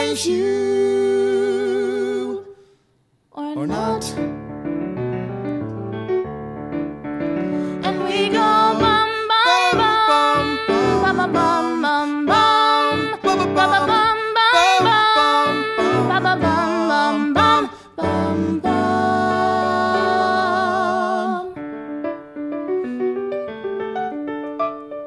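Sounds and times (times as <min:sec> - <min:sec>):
person singing wordlessly: 0:00.0 - 0:02.6, 0:03.4 - 0:04.3, 0:07.8 - 0:21.6.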